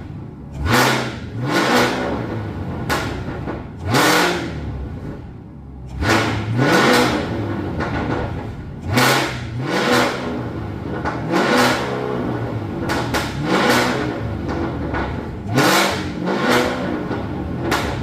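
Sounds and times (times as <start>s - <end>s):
car engine revving: 0.0s - 18.0s
exhaust pops and crackles: 2.7s - 3.9s, 12.7s - 18.0s.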